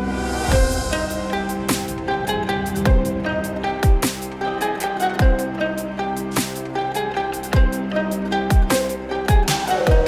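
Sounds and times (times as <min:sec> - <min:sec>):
sliding deep bass hits: 0:00.0 - 0:05.4
plucked string melody: 0:00.0 - 0:10.0.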